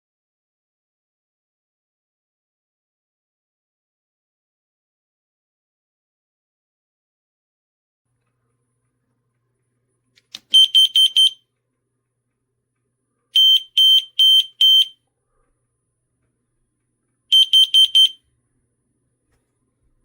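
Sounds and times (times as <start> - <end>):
faint click: 10.1 - 10.5
smoke alarm beeping: 10.4 - 11.4, 13.4 - 14.9, 17.3 - 18.2.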